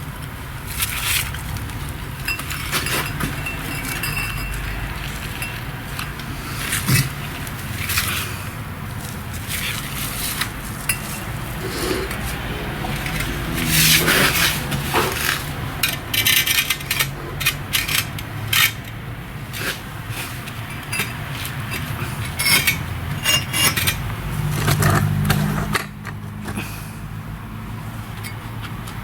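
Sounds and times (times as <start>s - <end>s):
metal clinking on brick: 2.2s - 8.2s, 13.0s - 19.0s, 20.5s - 26.6s
trowel scraping mortar: 6.3s - 18.8s.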